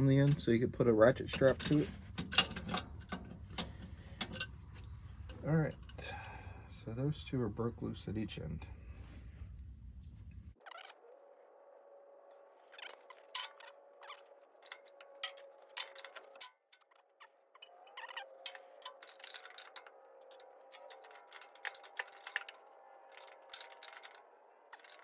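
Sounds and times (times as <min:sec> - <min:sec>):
light metallic clicks of wrenches: 0:00.0 - 0:07.0, 0:12.8 - 0:25.0.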